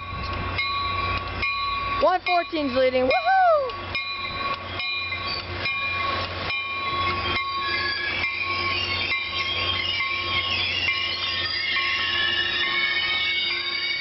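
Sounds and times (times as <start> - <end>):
train rumbling past: 0.0 - 14.0
wheels clicking over rail joints: 0.0 - 14.0
high wheel squeal: 7.0 - 14.0.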